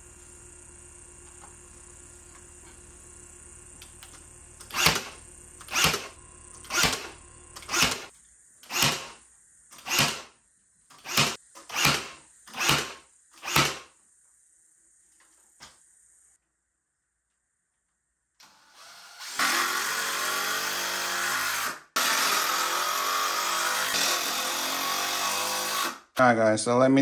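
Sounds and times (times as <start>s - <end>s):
steady hum: 0.0s - 13.3s.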